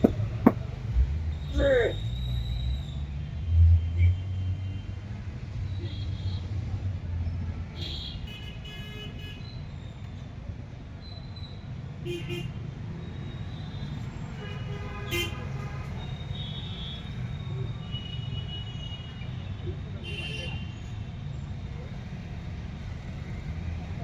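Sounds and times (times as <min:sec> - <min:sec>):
street traffic: 0:00.0 - 0:24.0
vehicle horns honking: 0:14.4 - 0:17.0.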